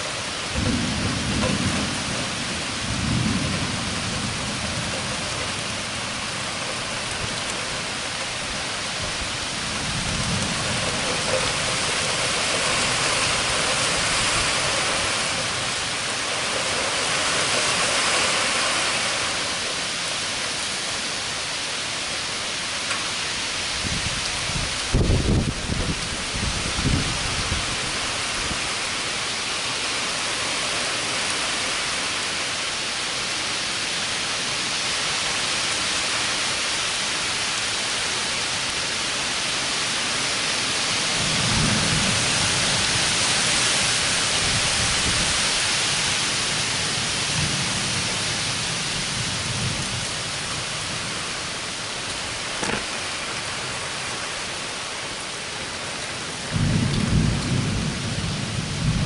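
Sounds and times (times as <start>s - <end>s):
heavy rain falling: 0.0s - 59.0s
thunder rumbling: 0.4s - 18.9s, 23.8s - 28.6s, 41.2s - 53.2s, 56.4s - 59.0s.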